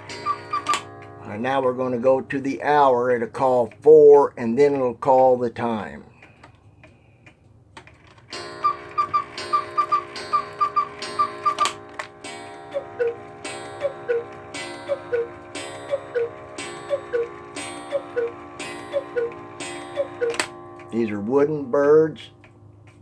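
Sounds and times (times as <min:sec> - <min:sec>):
quail clock whistled notes: 0:00.0 - 0:01.2, 0:08.3 - 0:22.6
cuckoo clock two-note call: 0:00.0 - 0:01.9, 0:08.4 - 0:22.7
clock strike ringing: 0:00.0 - 0:03.6, 0:08.3 - 0:23.0.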